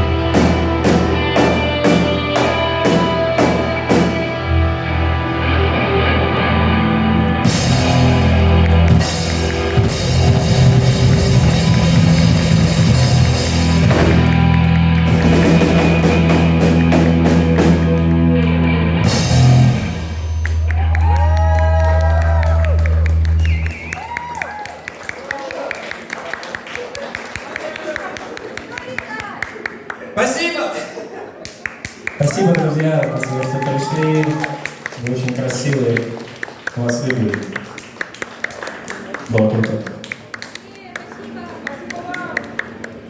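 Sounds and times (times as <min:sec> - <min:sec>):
rock band playing instrumental: 0:00.0 - 0:23.4.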